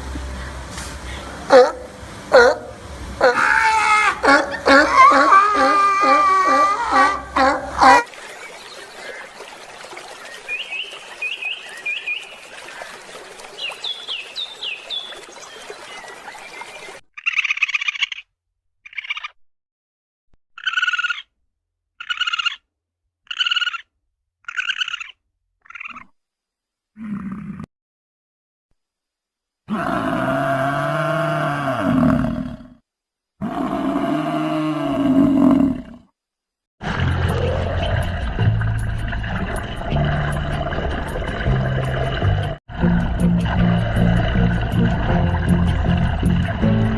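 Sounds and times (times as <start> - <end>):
large animal calling: 1.5 - 8.1, 22.0 - 22.6, 23.3 - 26.1
small bird chirping: 13.6 - 19.4, 20.6 - 21.3, 22.0 - 22.6, 23.3 - 26.2.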